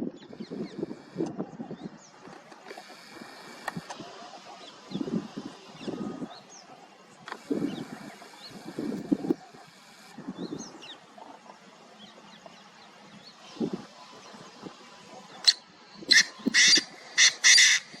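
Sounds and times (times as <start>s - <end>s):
small birds chirping: 0.1s - 18.0s
bird harsh calling: 15.4s - 18.0s.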